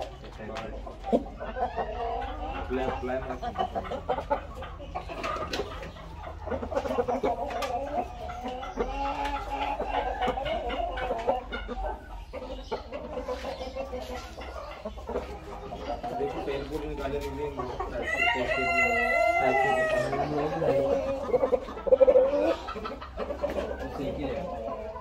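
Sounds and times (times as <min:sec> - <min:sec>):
chickens clucking: 0:00.0 - 0:25.0.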